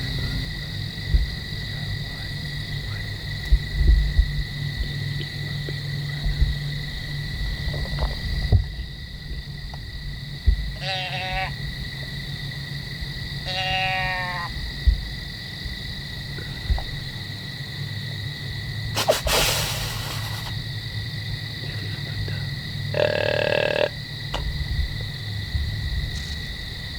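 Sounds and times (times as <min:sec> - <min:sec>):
deer bleating: 0:10.8 - 0:11.5, 0:13.5 - 0:14.5, 0:19.0 - 0:20.5, 0:22.9 - 0:24.0
deer snort-wheeze: 0:19.0 - 0:20.6.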